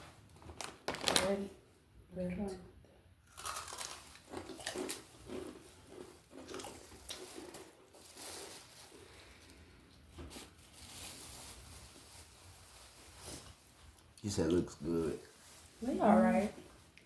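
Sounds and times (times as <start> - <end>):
people crunching chips: 3.2 - 12.4.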